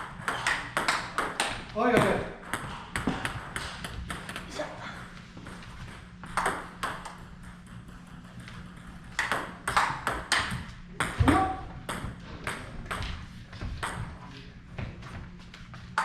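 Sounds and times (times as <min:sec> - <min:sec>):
table tennis ball clicks: 0:08.4 - 0:10.6.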